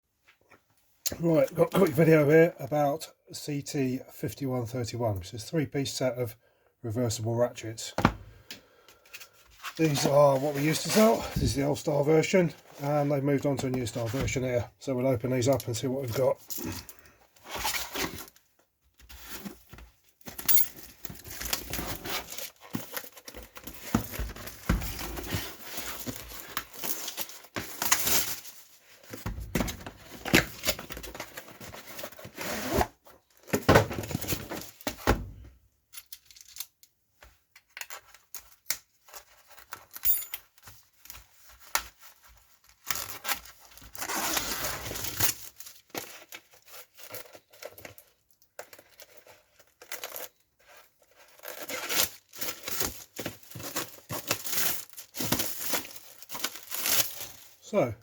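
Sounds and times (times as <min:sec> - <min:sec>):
packaging tearing and crinkling: 0:51.1 - 0:57.6.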